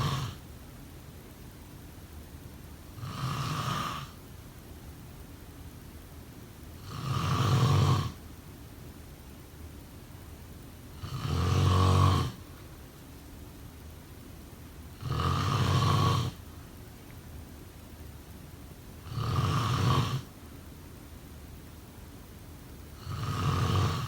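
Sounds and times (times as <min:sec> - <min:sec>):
person snoring: 0:00.0 - 0:00.4, 0:03.0 - 0:04.2, 0:06.8 - 0:08.2, 0:11.0 - 0:12.4, 0:15.0 - 0:16.4, 0:19.0 - 0:20.3, 0:23.0 - 0:24.0.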